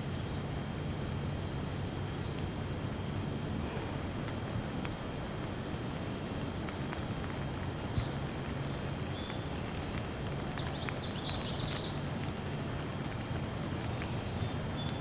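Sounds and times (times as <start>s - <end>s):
steady rain: 0.0s - 15.0s
birds chirping: 6.1s - 12.8s, 13.7s - 15.0s.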